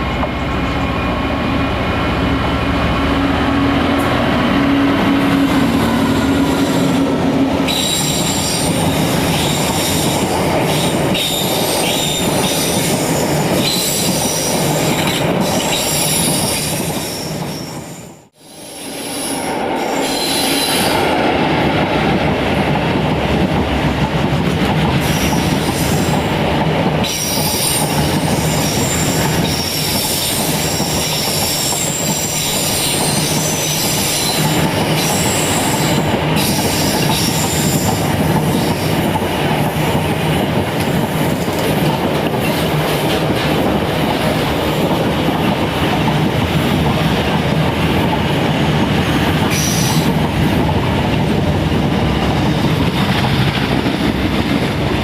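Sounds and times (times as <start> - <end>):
freight train wheels rumbling: 0.0 - 55.0.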